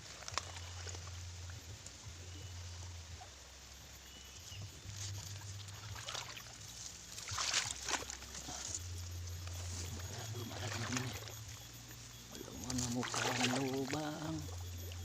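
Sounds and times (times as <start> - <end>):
water sloshing and splashing: 4.9 - 15.0.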